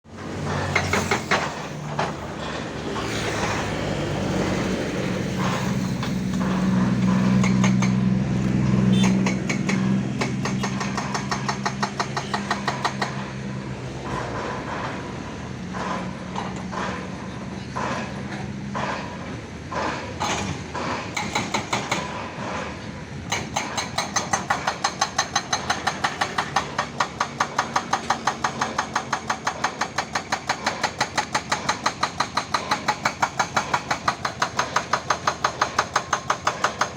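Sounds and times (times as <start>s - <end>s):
diesel engine revving: 0.2s - 10.2s
hydraulic rock breaker hammering: 0.2s - 36.9s.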